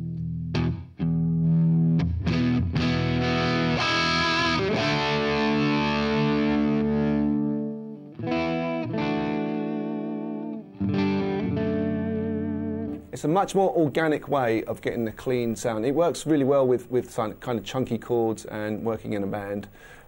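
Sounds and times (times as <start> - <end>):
electric guitar chords ringing: 0.0 - 13.2.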